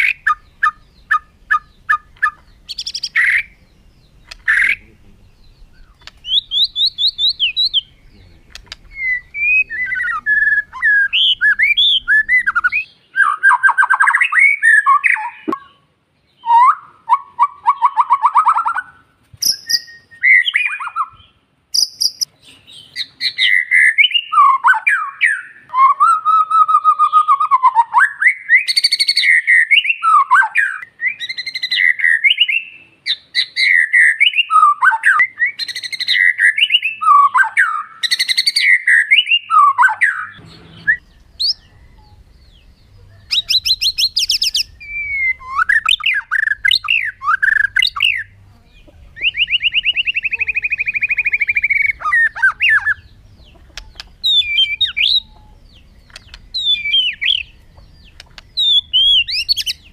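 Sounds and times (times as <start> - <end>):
faint low hum: 0.0 - 12.9, 40.4 - 59.9
bird singing whistled phrases: 0.0 - 15.8, 16.4 - 48.3, 49.2 - 53.1, 53.8 - 59.9.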